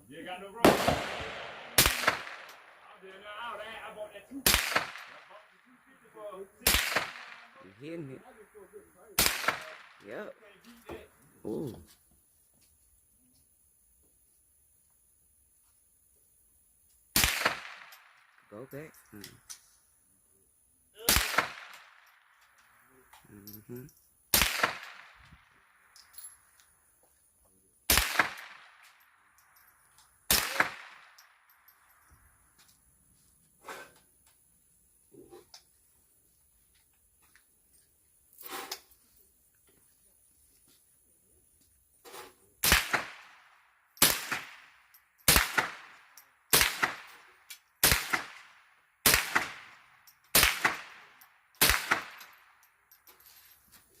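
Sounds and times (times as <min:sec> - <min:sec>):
gunshots: 0:00.6 - 0:03.7, 0:04.4 - 0:05.6, 0:06.6 - 0:08.0, 0:09.2 - 0:10.3, 0:17.2 - 0:18.2, 0:21.0 - 0:22.1, 0:24.3 - 0:25.3, 0:27.9 - 0:28.9, 0:30.3 - 0:31.2, 0:42.6 - 0:52.4.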